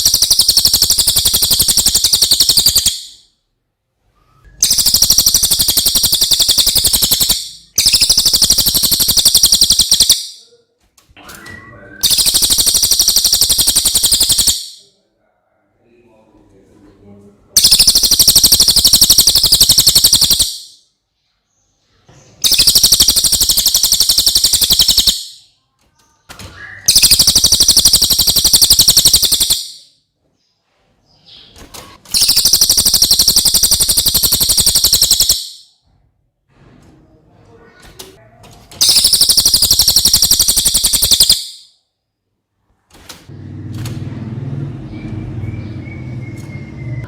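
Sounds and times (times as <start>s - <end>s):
bird singing high rapid trills: 0.0s - 3.3s, 4.6s - 10.4s, 12.0s - 14.8s, 17.6s - 20.8s, 22.4s - 25.5s, 26.7s - 29.9s, 32.1s - 35.7s, 38.8s - 41.7s, 44.9s - 47.0s.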